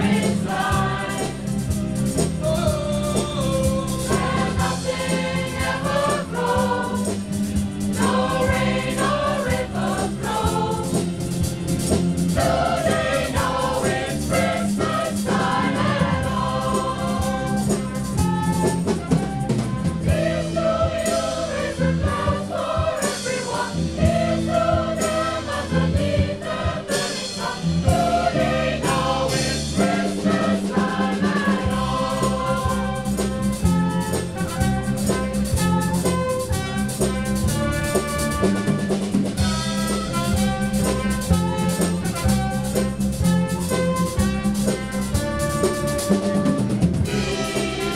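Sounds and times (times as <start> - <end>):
choir singing: 0.0 - 42.1, 45.6 - 47.9
percussion beats: 0.0 - 47.9.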